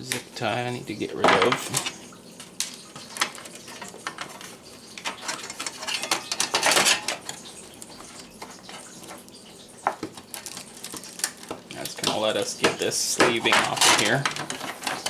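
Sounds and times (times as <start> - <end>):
rustle of wires being moved: 1.5 - 9.4.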